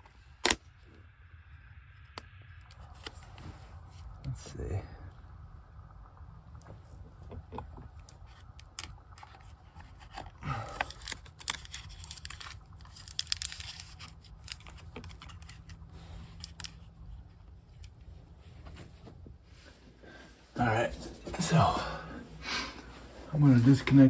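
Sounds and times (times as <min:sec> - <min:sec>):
materials rustling and scraping by hand: 0:07.3 - 0:21.6.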